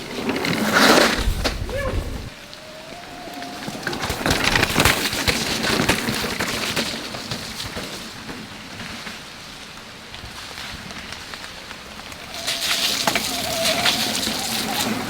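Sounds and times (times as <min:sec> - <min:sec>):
bike rattling: 0:00.0 - 0:09.6, 0:10.2 - 0:15.0
rolling hiss: 0:00.6 - 0:04.5, 0:11.7 - 0:15.0
tyres crunching over roots: 0:11.0 - 0:15.0.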